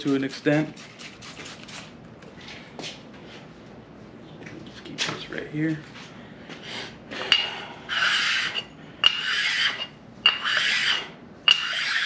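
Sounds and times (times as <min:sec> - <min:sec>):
sharpening stone scraping metal: 0:07.3 - 0:12.0.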